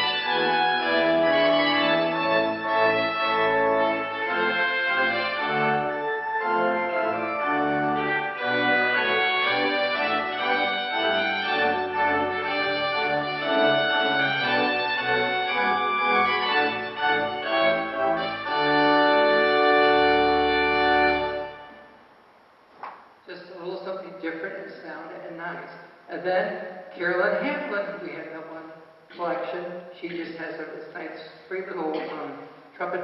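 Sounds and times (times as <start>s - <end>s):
organ playing processional: 0.0s - 21.9s.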